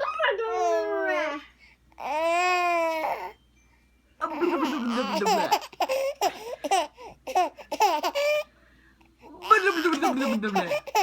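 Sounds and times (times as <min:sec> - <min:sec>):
baby laughing: 0:04.2 - 0:08.5, 0:09.4 - 0:11.0.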